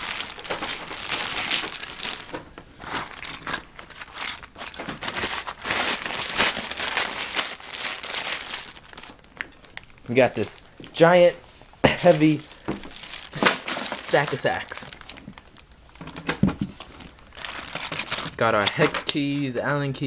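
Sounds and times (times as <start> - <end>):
small metal parts clinking: 0.0 - 10.0, 17.2 - 19.5
plastic bags crinkling: 0.0 - 11.0, 11.6 - 19.6.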